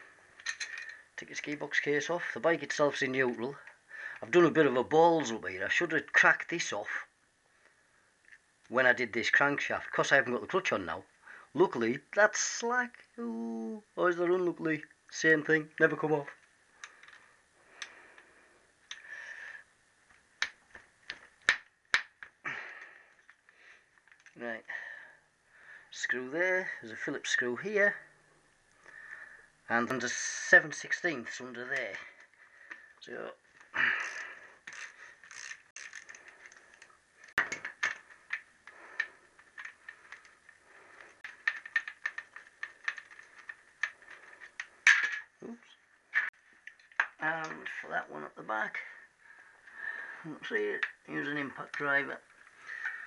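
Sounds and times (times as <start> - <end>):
hand tools clicking on metal: 0.4 - 1.0, 33.6 - 45.2.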